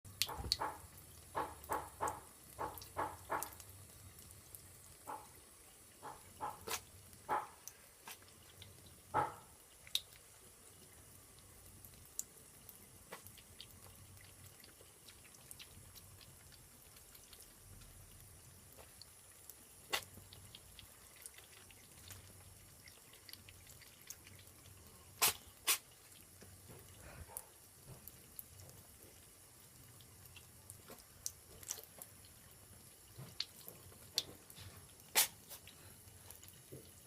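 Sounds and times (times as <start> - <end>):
tap trickling: 0.2 - 3.6, 27.8 - 28.9, 33.1 - 34.8, 36.7 - 37.0
cat sneezing: 25.2 - 25.9, 35.1 - 35.6.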